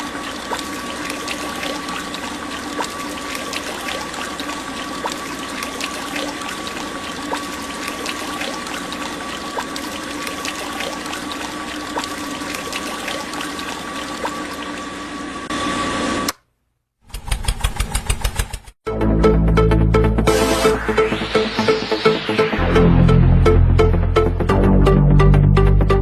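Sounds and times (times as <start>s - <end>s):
liquid trickling and splashing: 0.0s - 15.0s
music with a beat: 18.9s - 26.0s.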